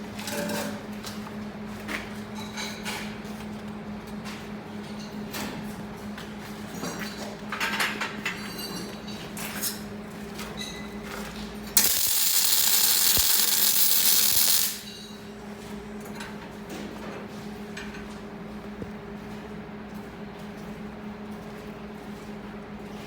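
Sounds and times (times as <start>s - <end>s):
welding arc hissing: 11.8s - 14.9s
steady low hum: 11.8s - 16.0s.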